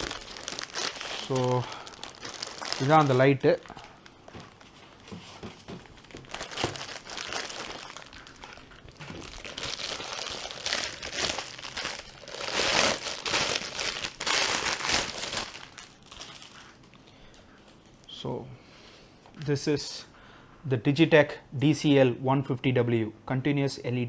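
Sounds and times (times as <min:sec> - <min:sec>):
packaging wrap crinkling: 0:00.0 - 0:18.1.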